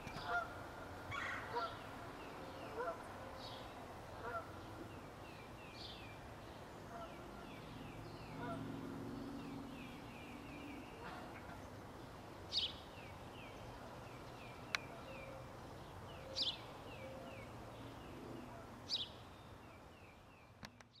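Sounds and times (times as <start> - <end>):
geese honking: 0.0 - 1.9, 2.6 - 3.1, 4.2 - 4.6, 8.4 - 8.7.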